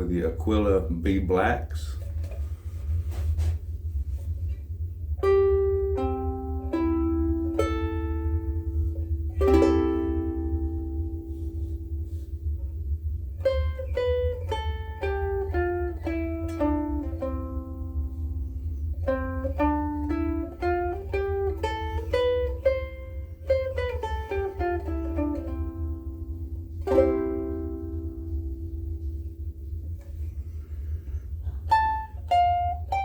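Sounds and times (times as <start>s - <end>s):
steady low hum: 0.0s - 33.0s
plucked ukulele melody: 5.2s - 12.5s, 13.4s - 30.3s, 31.6s - 33.0s
ukulele chord ringing: 5.2s - 12.6s, 13.4s - 29.5s, 31.6s - 33.0s.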